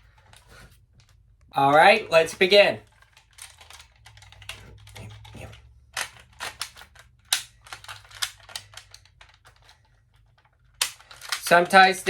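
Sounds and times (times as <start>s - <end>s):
plastic toy clicks: 2.8s - 12.0s.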